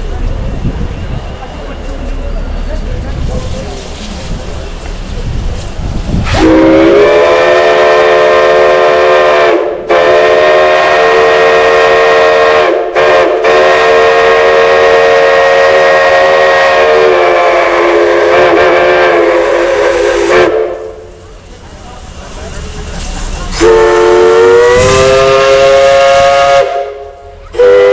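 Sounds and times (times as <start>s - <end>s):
steam whistle chord: 6.2s - 21.0s, 23.6s - 27.9s.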